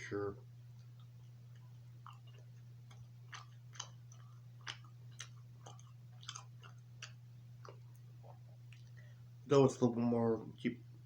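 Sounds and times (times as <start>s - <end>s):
steady low hum: 0.0s - 11.0s
person chewing: 0.7s - 9.2s.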